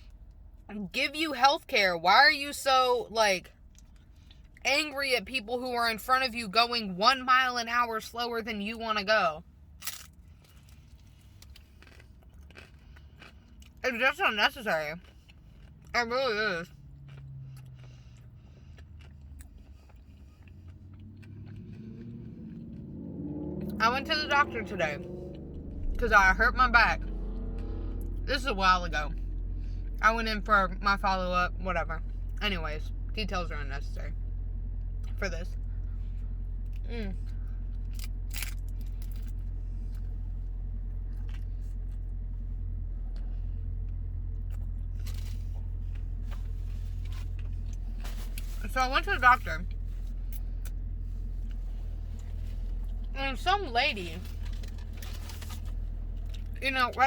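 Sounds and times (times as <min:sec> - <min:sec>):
car engine hum inside cabin: 0:00.0 - 0:57.0
person eating crunchily: 0:09.8 - 0:13.8, 0:15.0 - 0:15.9, 0:16.6 - 0:23.8.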